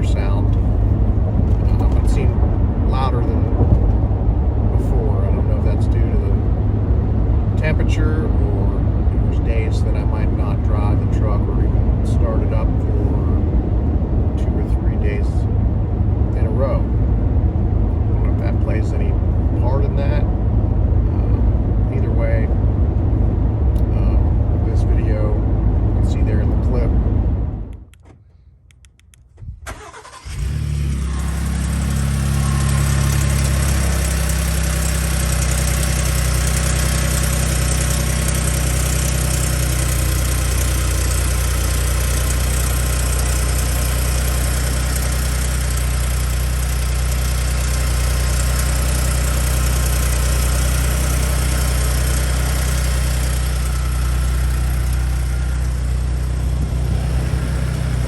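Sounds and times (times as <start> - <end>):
engine idling: 0.0 - 28.0, 29.7 - 58.0
starter clicks: 27.8 - 30.2.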